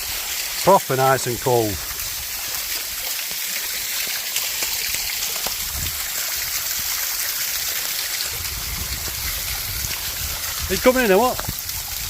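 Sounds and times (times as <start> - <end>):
waterfall splashing into pool: 0.0 - 12.0
low rumbles: 8.3 - 12.0.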